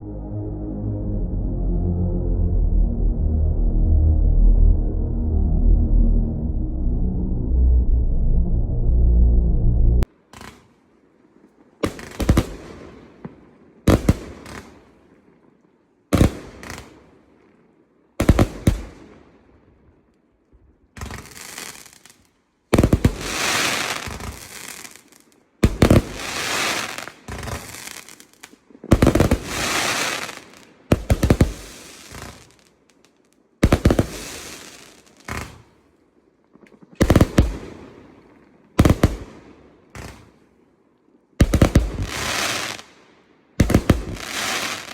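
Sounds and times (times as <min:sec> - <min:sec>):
firework volleys with crackling: 0:21.0 - 0:35.8, 0:36.7 - 0:38.2, 0:38.8 - 0:40.3, 0:41.4 - 0:43.0, 0:43.6 - 0:44.9
firework bangs: 0:41.4 - 0:42.9, 0:43.6 - 0:44.9.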